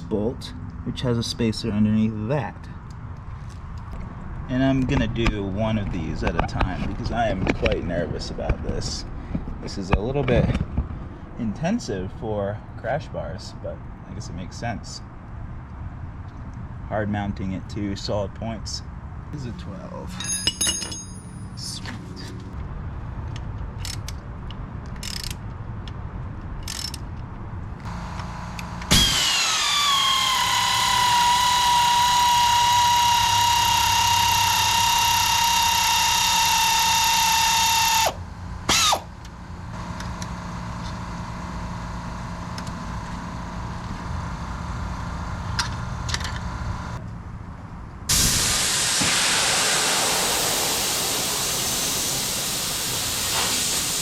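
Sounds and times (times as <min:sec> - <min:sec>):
compressed-air equipment whining: 0:27.9 - 0:47.0, 0:48.1 - 0:54.0
air hissing from burst hose: 0:48.1 - 0:54.0.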